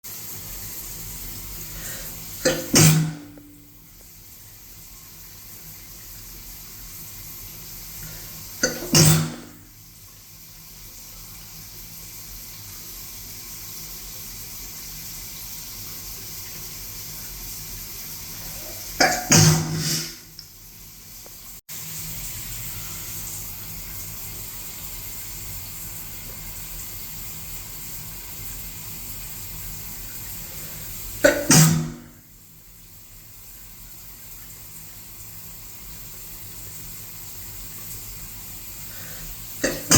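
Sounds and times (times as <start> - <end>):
shower water running: 0.0 - 39.9
person sneezing: 18.6 - 20.3, 31.2 - 32.0, 39.6 - 39.9.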